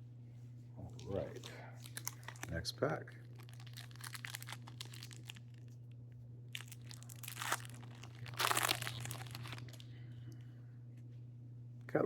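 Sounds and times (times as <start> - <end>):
foil wrapper crinkling and tearing: 1.1 - 2.6, 3.2 - 5.7, 6.5 - 9.9.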